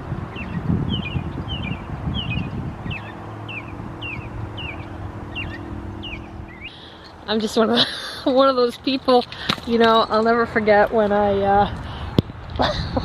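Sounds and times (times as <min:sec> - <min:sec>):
wind rumble on microphone: 0:00.0 - 0:07.9, 0:08.6 - 0:13.0
steady low hum: 0:00.0 - 0:09.0
small bird chirping: 0:00.3 - 0:07.2.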